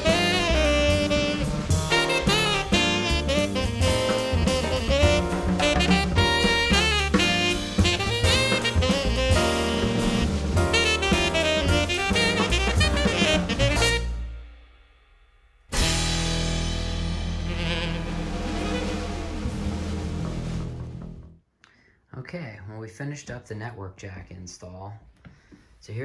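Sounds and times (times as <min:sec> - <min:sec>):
jazz with saxophone and drums: 0:00.0 - 0:14.8, 0:15.7 - 0:21.4.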